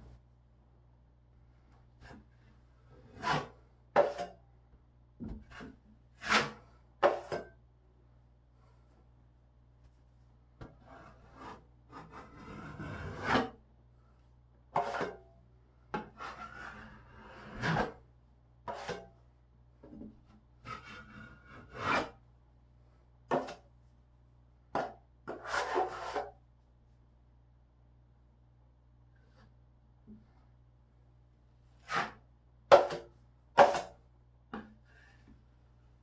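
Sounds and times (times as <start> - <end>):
scraping on drywall: 2.9 - 4.4, 5.4 - 7.5, 10.6 - 13.6, 14.7 - 15.2, 16.0 - 18.0, 18.6 - 19.1, 20.6 - 22.2, 25.3 - 26.4, 31.8 - 34.0.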